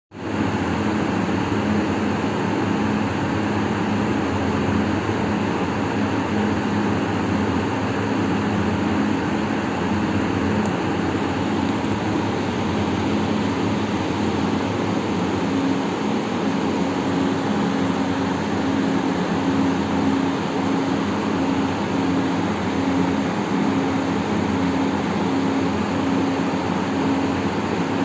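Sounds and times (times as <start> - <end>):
machine running with low hum: 0.2 - 28.0.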